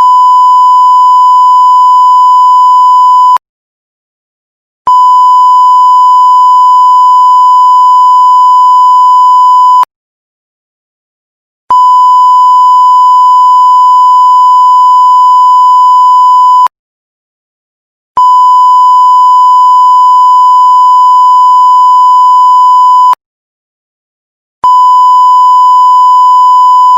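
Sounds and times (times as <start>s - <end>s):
censorship bleep tone: 0.0s - 3.4s, 4.9s - 9.9s, 11.7s - 16.7s, 18.2s - 23.2s, 24.6s - 26.9s.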